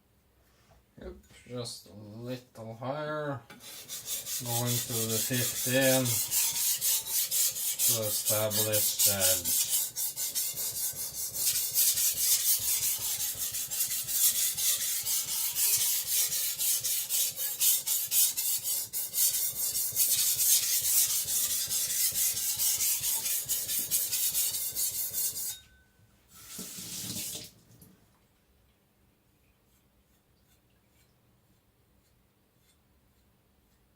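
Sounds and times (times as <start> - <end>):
blade scraping on whetstone: 3.6 - 25.6.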